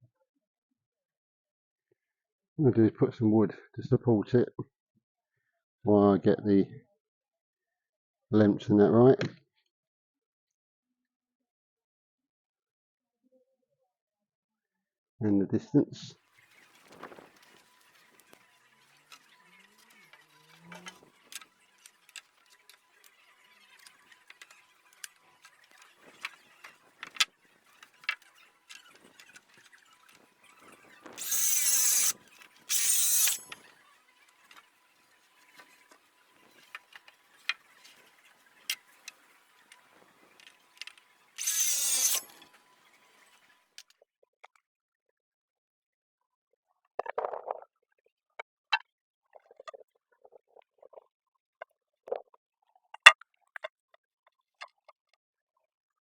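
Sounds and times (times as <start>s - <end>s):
tape measure rasping whirr: 16.5s - 43.8s.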